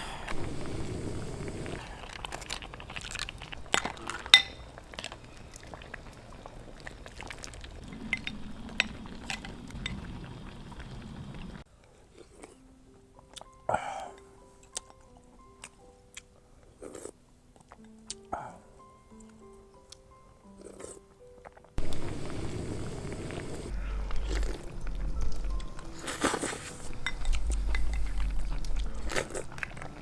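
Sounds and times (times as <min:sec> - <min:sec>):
crab shell crunching: 0:00.3 - 0:09.9, 0:20.5 - 0:30.0
chewing and biting: 0:01.2 - 0:10.0, 0:11.9 - 0:12.6, 0:14.6 - 0:18.3, 0:20.4 - 0:21.7, 0:23.2 - 0:30.0
utensils clinking on dishes: 0:03.4 - 0:05.2
soft background music: 0:11.6 - 0:30.0.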